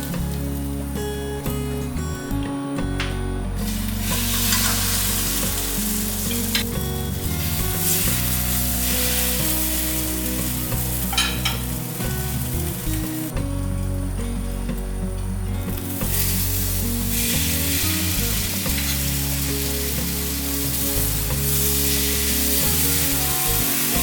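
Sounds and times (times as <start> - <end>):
food sizzling in a pan: 3.6 - 13.3, 15.7 - 24.0.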